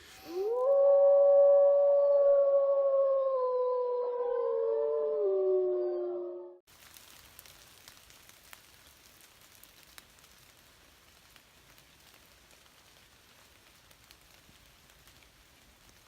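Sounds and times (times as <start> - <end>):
light rain hissing: 0.0 - 1.6, 6.7 - 16.0
raindrops ticking: 6.7 - 16.0.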